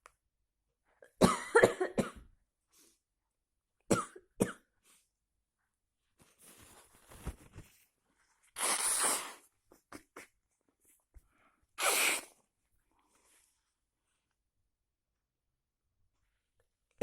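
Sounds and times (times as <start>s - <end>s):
person sneezing: 8.6s - 9.4s, 11.8s - 12.3s.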